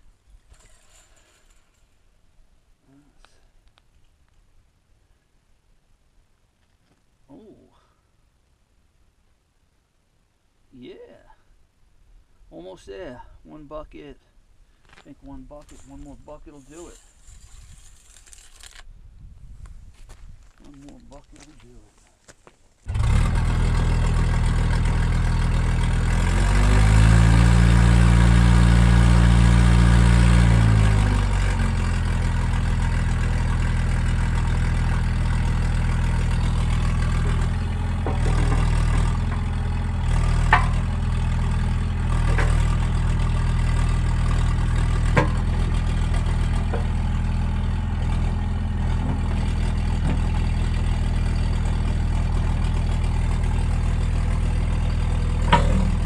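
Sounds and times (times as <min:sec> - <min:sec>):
excavator diesel engine running: 0:22.9 - 0:56.0.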